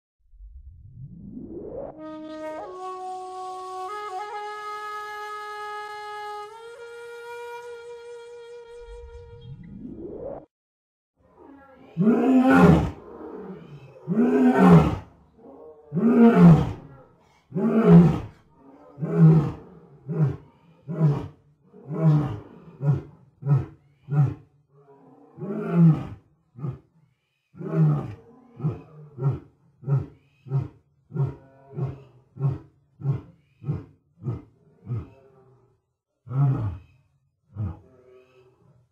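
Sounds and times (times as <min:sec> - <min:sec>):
lion roaring: 0:11.3 - 0:26.9, 0:27.6 - 0:35.7, 0:36.3 - 0:36.8, 0:37.6 - 0:38.9
lion grunting: 0:11.4 - 0:26.9, 0:27.6 - 0:35.6, 0:37.5 - 0:38.8.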